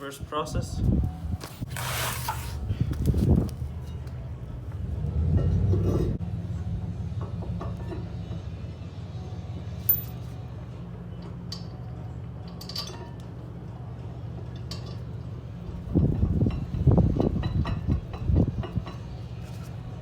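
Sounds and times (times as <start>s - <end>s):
metal tools clinking: 9.9s - 10.3s.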